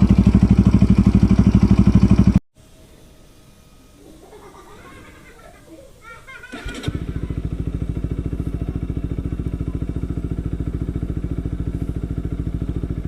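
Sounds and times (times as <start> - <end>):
engine idling: 0.0 - 2.4, 6.5 - 13.0
motorcycle starter: 6.4 - 10.8.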